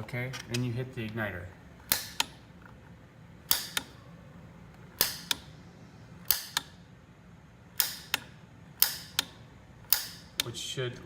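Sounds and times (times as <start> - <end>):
piezo igniter snapping and clicking: 1.8 - 2.4, 3.4 - 4.0, 5.0 - 5.5, 6.2 - 6.8, 7.7 - 10.6.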